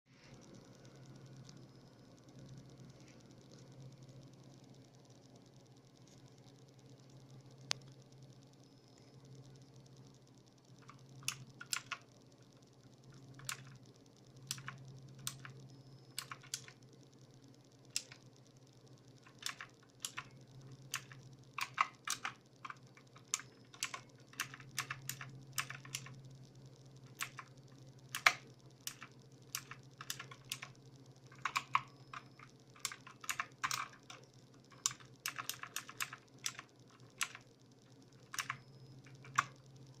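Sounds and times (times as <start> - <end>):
faint low hum: 0.1 - 40.0
mechanical keyboard key clicks: 10.8 - 12.0, 13.4 - 13.8, 14.5 - 15.5, 16.2 - 16.8, 17.9 - 18.2, 19.2 - 20.3, 20.9 - 26.1, 27.1 - 27.5, 28.1 - 30.7, 31.3 - 37.4, 38.2 - 39.6.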